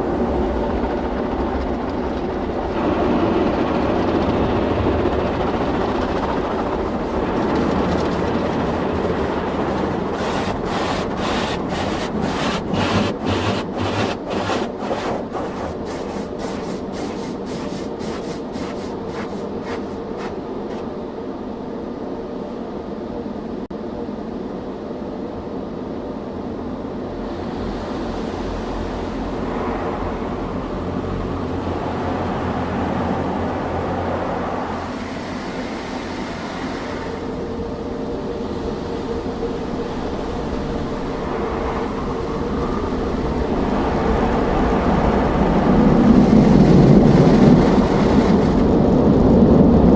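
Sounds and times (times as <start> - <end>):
machinery hum: 0.0 - 49.9
rhythmic slaps of car wash: 5.6 - 20.9
rushing water spray: 6.5 - 20.8.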